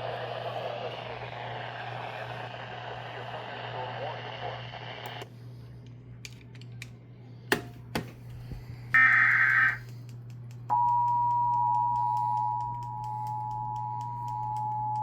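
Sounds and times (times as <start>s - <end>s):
constant low hum: 0.0s - 15.0s
buzzy data burst: 9.0s - 9.8s
two-tone attention signal: 9.0s - 9.8s.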